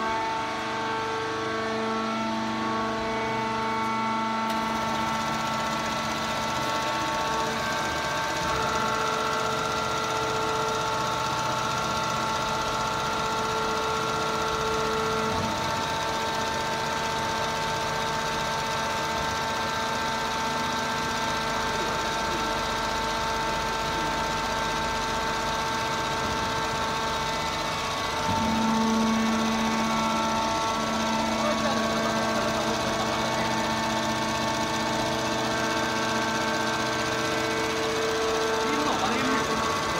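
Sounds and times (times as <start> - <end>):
machine whine: 0.0 - 39.9
baler mechanical rattle: 21.1 - 39.9.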